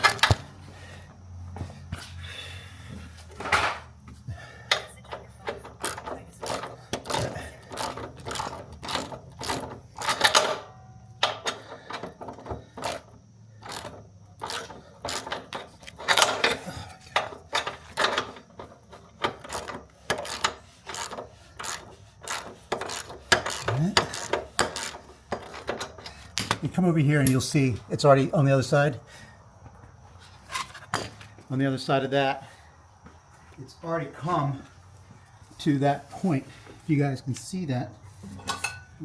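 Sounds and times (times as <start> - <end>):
metal tools clicking and scraping: 4.6 - 27.4, 30.4 - 31.3, 38.2 - 39.0.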